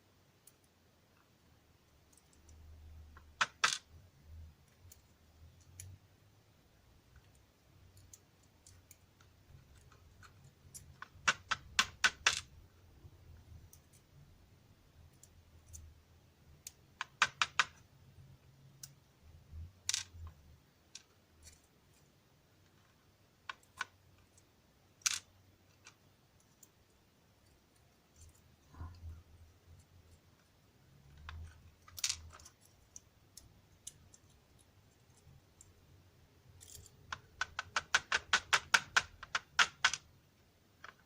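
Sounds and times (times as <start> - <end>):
lock pins clicking: 36.5 - 40.0.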